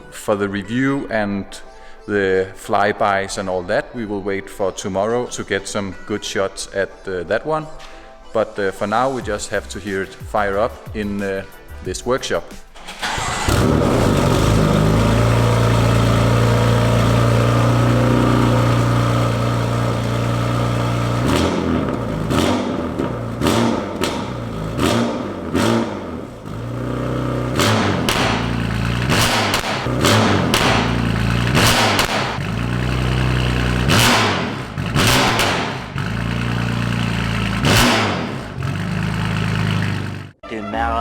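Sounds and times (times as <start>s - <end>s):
car engine idling: 12.8s - 40.4s
engine throttle blips: 12.9s - 40.4s.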